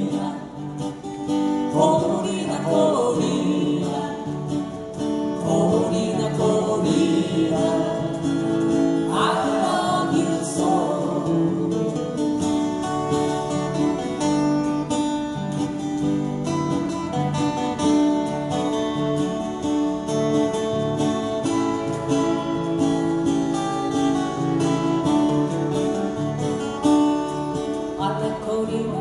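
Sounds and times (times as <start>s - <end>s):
acoustic guitars strumming: 0.0s - 29.0s.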